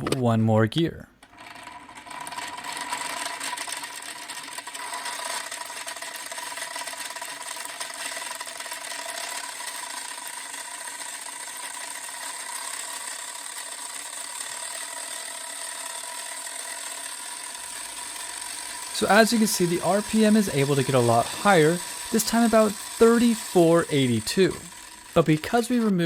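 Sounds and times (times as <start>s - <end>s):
gear train whining with chatter: 15.9s - 26.0s.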